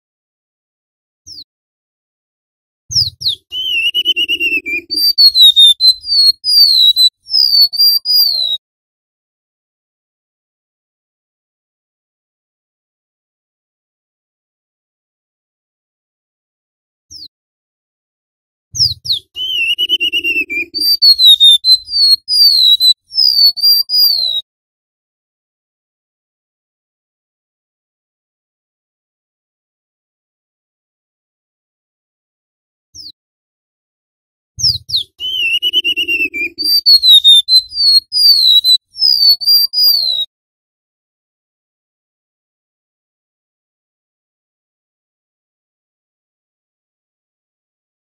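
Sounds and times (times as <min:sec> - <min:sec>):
bird singing high whistles: 0:02.9 - 0:08.6, 0:18.8 - 0:24.4, 0:34.6 - 0:40.3.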